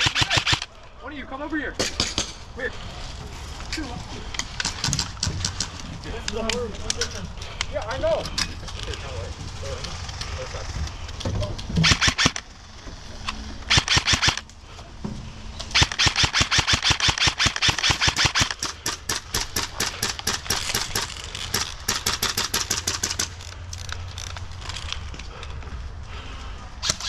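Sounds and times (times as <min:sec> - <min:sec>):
airsoft rifle rapid fire: 0:00.0 - 0:00.7, 0:11.8 - 0:12.5, 0:13.7 - 0:14.4, 0:15.7 - 0:23.4.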